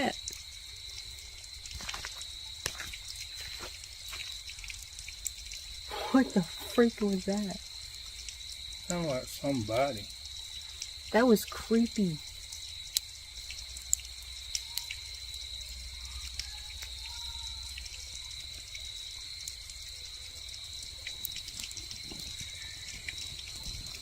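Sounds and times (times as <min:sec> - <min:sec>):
faint ticks: 0:00.1 - 0:09.1, 0:09.7 - 0:24.0
chorus of calling animals: 0:05.8 - 0:07.4, 0:14.5 - 0:24.0.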